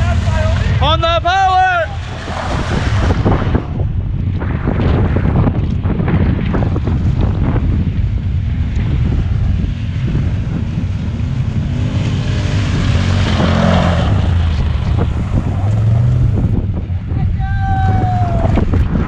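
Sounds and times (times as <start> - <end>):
engine running under throttle: 7.0 - 16.7.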